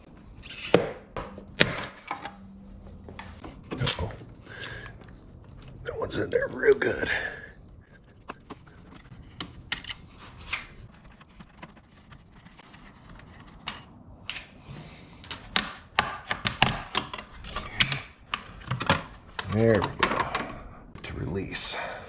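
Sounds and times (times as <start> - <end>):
sharp plastic clicks and knocks: 15.2 - 20.6.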